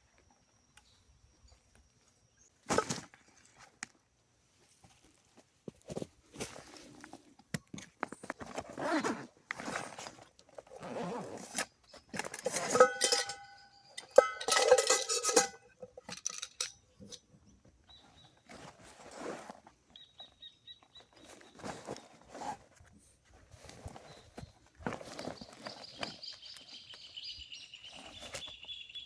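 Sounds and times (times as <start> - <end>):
sharp metal clanks: 12.2 - 16.8.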